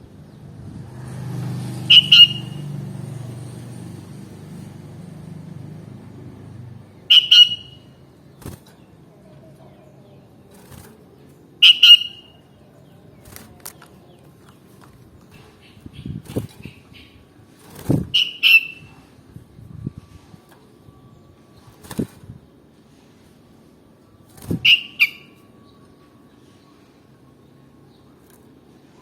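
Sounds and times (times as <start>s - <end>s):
bird double call notes: 1.9s - 2.6s, 7.1s - 7.9s, 11.6s - 12.4s, 18.1s - 18.9s.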